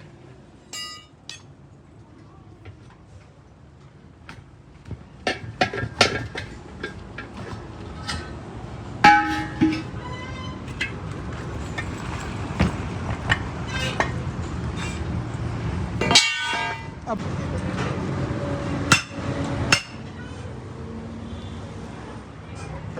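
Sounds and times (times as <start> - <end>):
metal clanks and clinks: 0.7 - 1.6, 5.2 - 18.0, 18.9 - 20.1.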